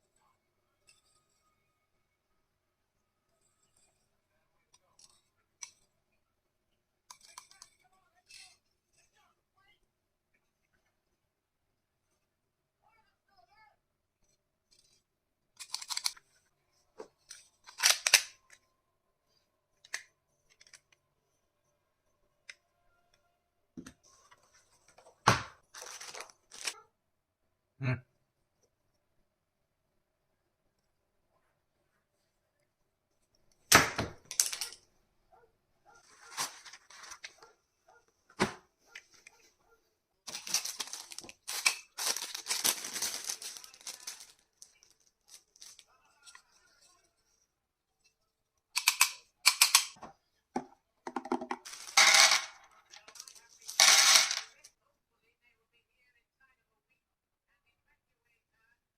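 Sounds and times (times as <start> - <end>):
plastic packaging rustling: 25.6 - 26.8, 34.3 - 34.8, 36.0 - 37.4, 40.3 - 45.9, 51.6 - 52.4.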